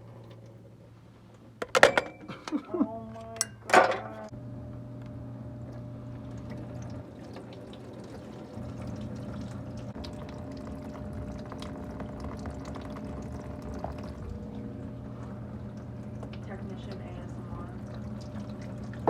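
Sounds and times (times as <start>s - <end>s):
coolant trickling and dripping: 5.5s - 19.0s.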